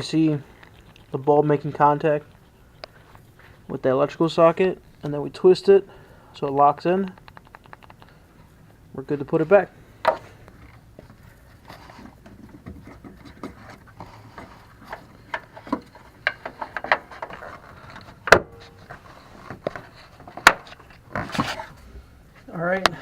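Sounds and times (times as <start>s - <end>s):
sharp clicks: 6.4s - 8.2s
plastic scraping and knocking: 10.0s - 21.8s.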